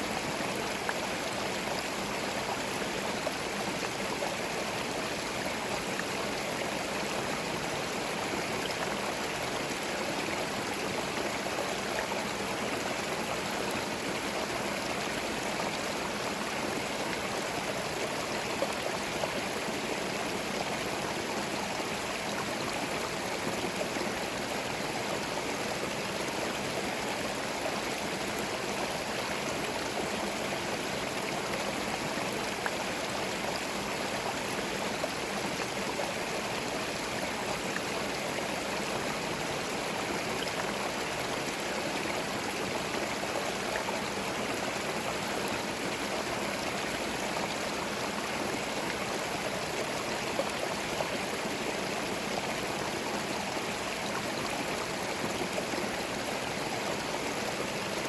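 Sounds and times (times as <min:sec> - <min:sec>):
stream flowing over stones: 0:00.0 - 0:58.0.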